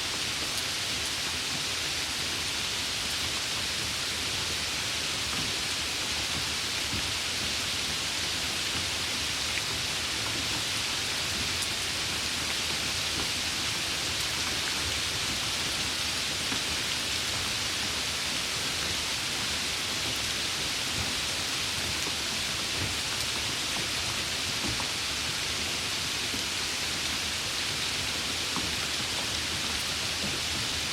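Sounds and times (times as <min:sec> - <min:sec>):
light rain falling: 0:00.0 - 0:30.9.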